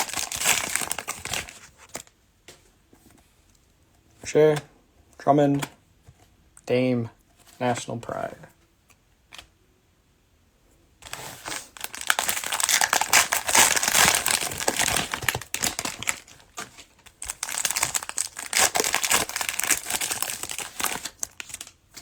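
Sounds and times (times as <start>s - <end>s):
cellophane wrapper crinkling: 0.0s - 2.1s, 11.0s - 22.0s.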